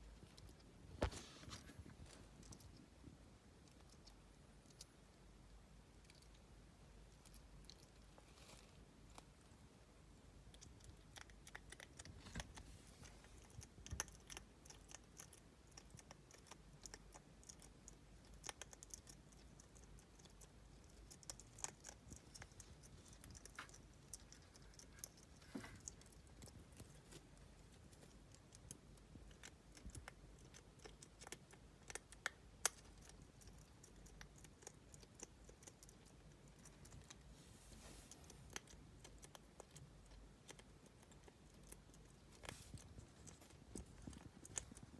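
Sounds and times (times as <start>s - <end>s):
hedgehog clicking and scratching: 10.4s - 44.9s.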